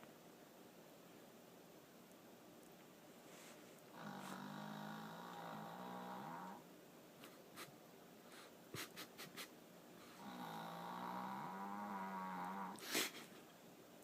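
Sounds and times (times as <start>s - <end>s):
dog snoring: 3.9s - 6.6s, 10.2s - 12.8s.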